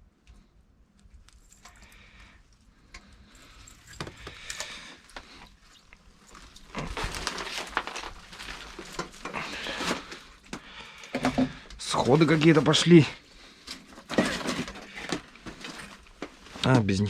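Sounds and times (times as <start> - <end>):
handling rustling: 0.9 - 17.0
small clicks and clinks: 1.0 - 5.6.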